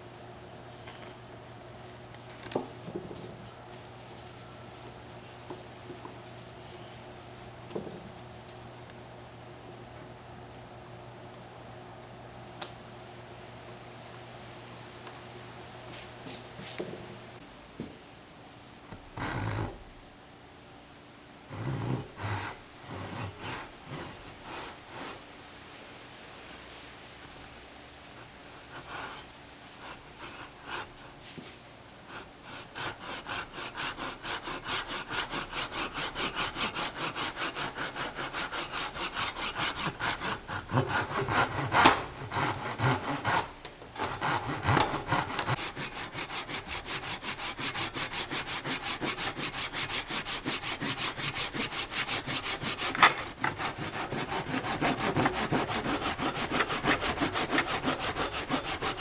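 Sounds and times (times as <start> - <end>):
hand saw cutting wood: 21.5 - 25.2, 28.2 - 31.4, 32.0 - 59.0.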